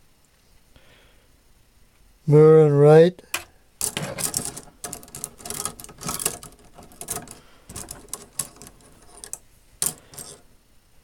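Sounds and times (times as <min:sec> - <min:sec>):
metal calipers clicking and clinking: 0:03.4 - 0:10.4.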